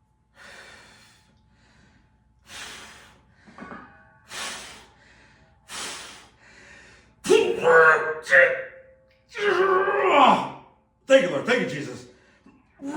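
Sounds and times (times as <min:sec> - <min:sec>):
man breathing hard: 0:00.3 - 0:07.2.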